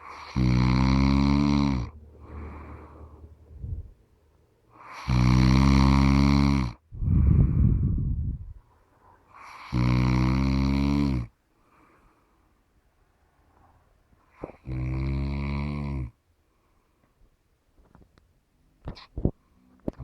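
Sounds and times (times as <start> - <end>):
person snoring: 0.0 - 3.9, 4.8 - 8.1, 9.4 - 11.3, 14.4 - 16.2.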